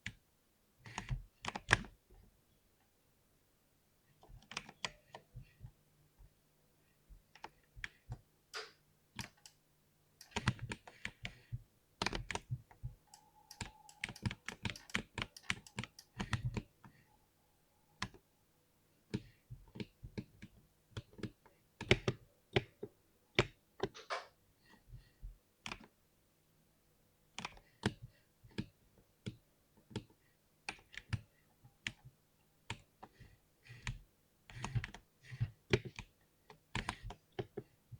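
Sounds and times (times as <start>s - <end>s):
keyboard keystroke clicks: 8.6s - 9.6s, 10.2s - 11.4s, 13.1s - 16.7s.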